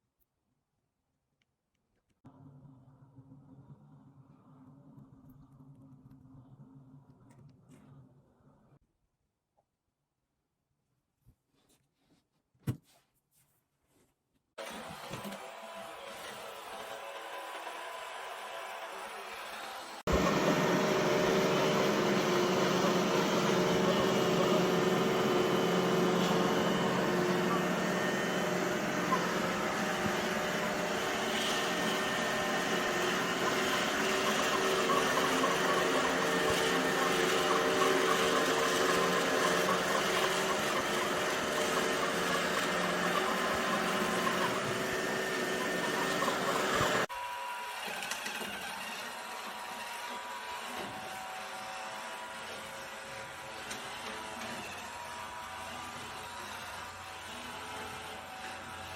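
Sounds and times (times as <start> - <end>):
robot vacuum whirring: 14.6 - 58.9.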